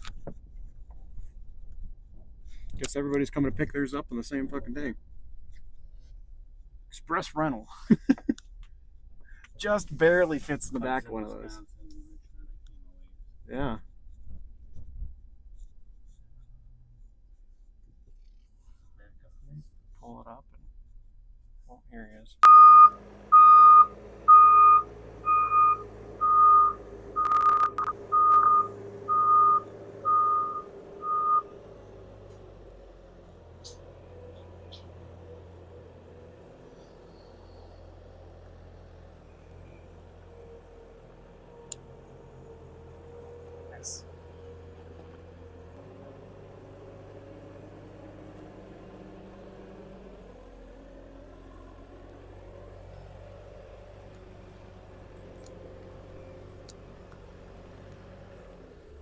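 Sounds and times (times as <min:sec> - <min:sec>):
reversing alarm beeping: 0:22.4 - 0:31.5
vehicle engine running: 0:22.4 - 0:59.0.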